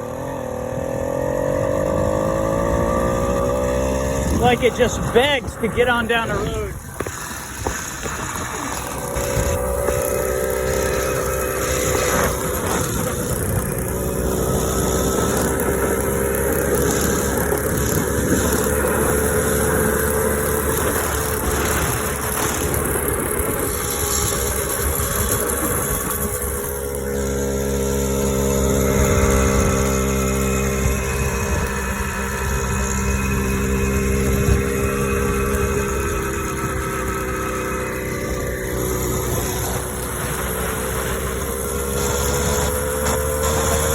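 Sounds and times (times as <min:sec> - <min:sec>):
small bicycle engine humming: 0:00.0 - 0:43.9.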